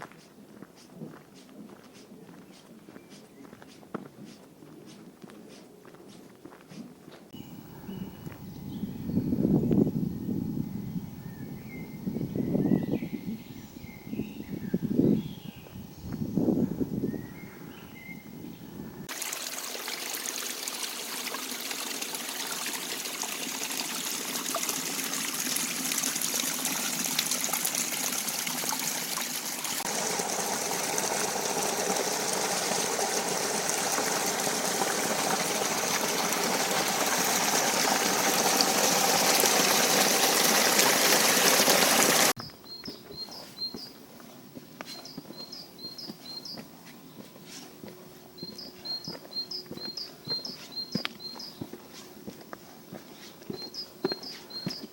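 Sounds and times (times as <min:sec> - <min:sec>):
bird chirping: 0:07.4 - 0:19.1, 0:42.4 - 0:44.0, 0:44.8 - 0:47.2, 0:48.4 - 0:51.7, 0:53.2 - 0:54.9
running water splashing: 0:19.1 - 0:42.4.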